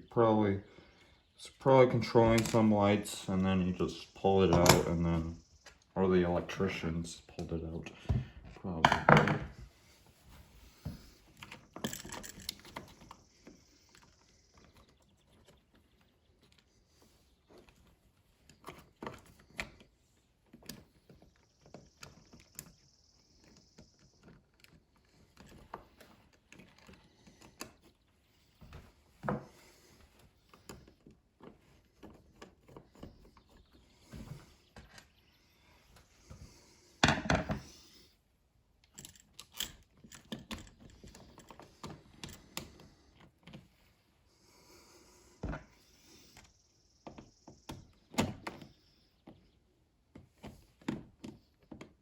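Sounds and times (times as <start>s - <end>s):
clicks taps and scrapes of hand work: 17.5s - 22.8s, 23.4s - 35.2s.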